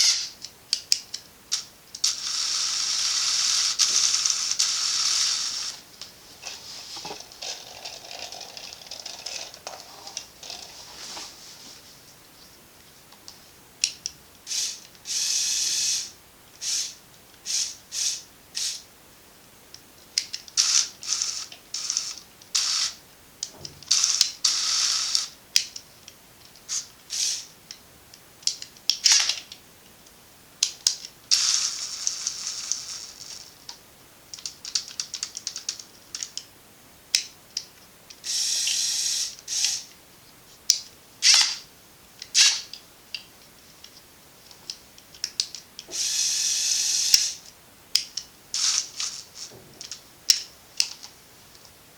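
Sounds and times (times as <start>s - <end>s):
toy motors whirring: 0.0s - 0.4s, 1.5s - 5.8s, 14.5s - 18.8s, 20.6s - 23.0s, 23.9s - 25.7s, 26.7s - 27.5s, 31.3s - 33.5s, 38.2s - 39.9s, 41.2s - 41.6s, 42.3s - 42.7s, 45.9s - 47.5s, 48.5s - 49.5s.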